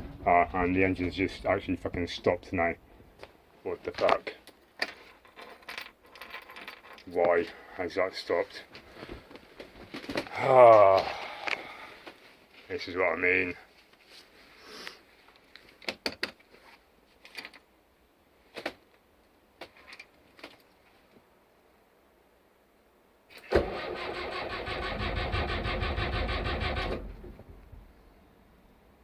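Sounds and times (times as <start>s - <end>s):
boat engine starter cranking: 23.4s - 27.9s.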